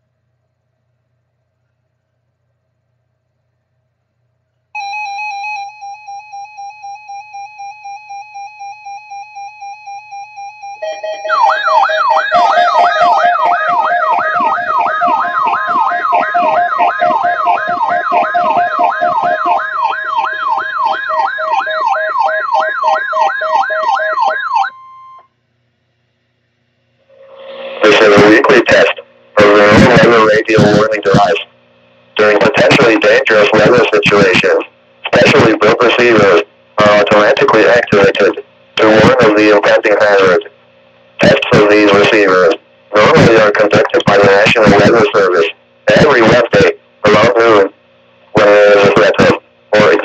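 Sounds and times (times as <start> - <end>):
steady alert tones: 4.8 - 25.1
buzzy electronic beep: 4.8 - 25.2, 27.1 - 30.3
fast-warbling electronic siren: 4.8 - 25.2.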